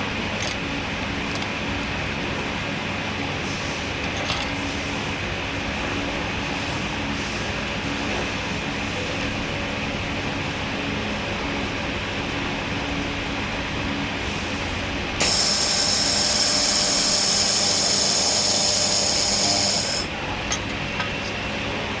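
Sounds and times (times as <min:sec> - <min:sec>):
high-pitched welder hiss: 0:15.2 - 0:20.1
welding machine humming: 0:15.2 - 0:20.1.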